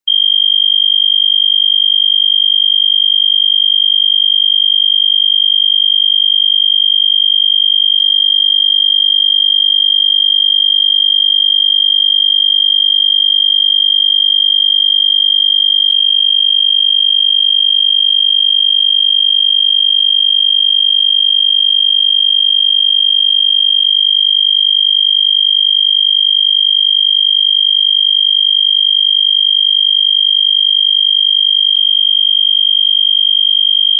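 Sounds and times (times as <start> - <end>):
fire alarm steady high tone: 0.1 - 33.9.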